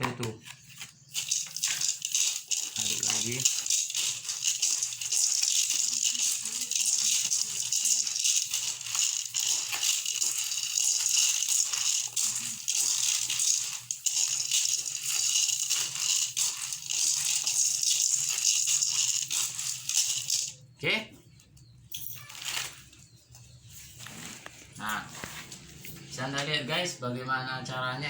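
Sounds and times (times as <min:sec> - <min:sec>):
grains rattling in container: 0:00.9 - 0:20.8.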